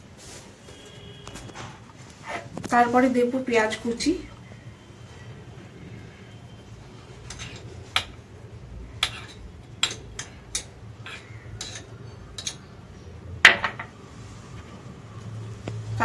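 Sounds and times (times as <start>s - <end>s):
spoon clinking against bowl: 9.0s - 12.7s.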